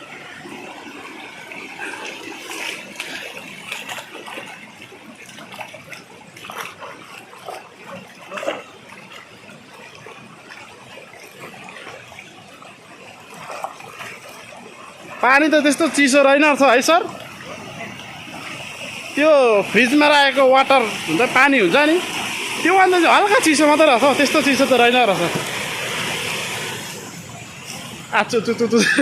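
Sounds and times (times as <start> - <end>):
stream trickling over stones: 0.0 - 29.0
short splashes and clicks: 0.4 - 28.2.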